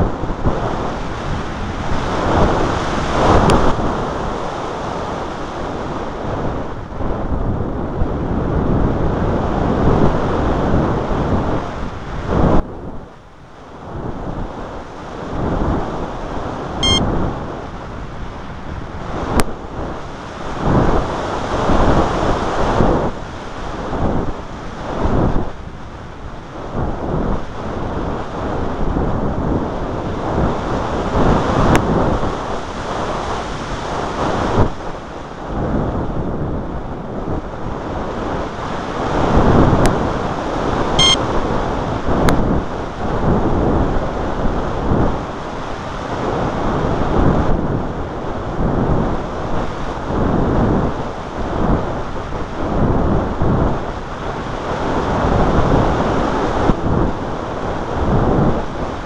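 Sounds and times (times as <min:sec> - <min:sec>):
wind buffeting microphone: 0:00.0 - 0:59.0
high electronic chirps: 0:41.0 - 0:41.2.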